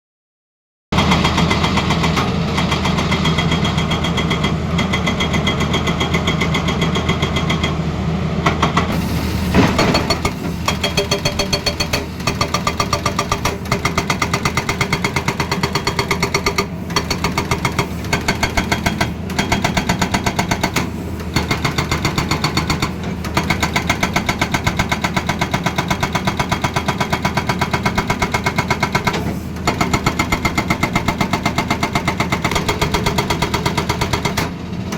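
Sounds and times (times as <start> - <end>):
excavator diesel engine running: 1.0 - 34.9
hydraulic breaker hammering: 8.4 - 34.6.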